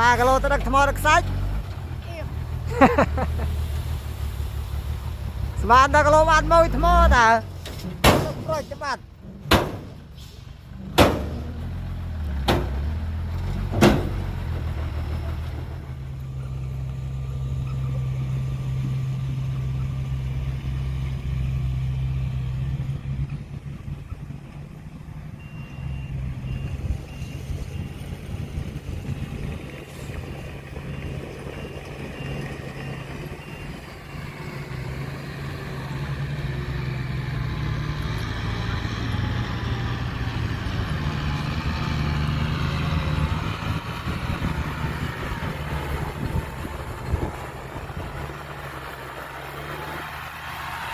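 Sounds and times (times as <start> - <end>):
heavy diesel engine running: 0.0 - 50.9
sharp knocks: 8.0 - 8.5, 9.4 - 10.0, 10.9 - 11.6, 12.4 - 12.8, 13.6 - 14.3.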